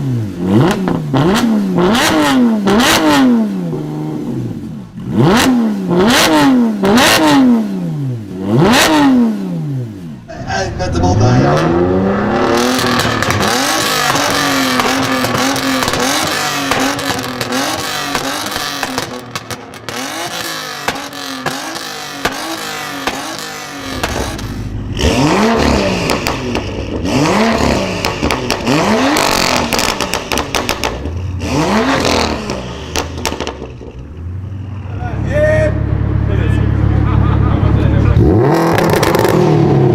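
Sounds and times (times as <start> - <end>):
car engine revving: 0.0 - 39.9
exhaust crackles and pops: 12.5 - 24.8, 25.6 - 31.4, 32.0 - 34.2.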